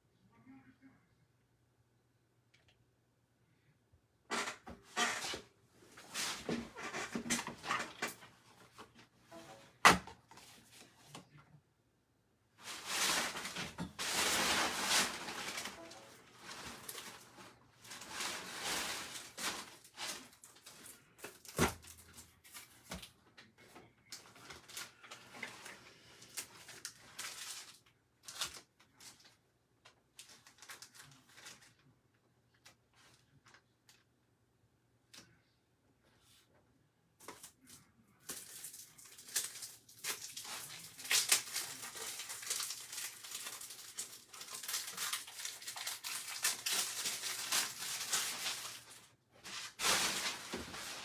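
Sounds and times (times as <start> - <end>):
handling rustling: 38.3 - 51.0.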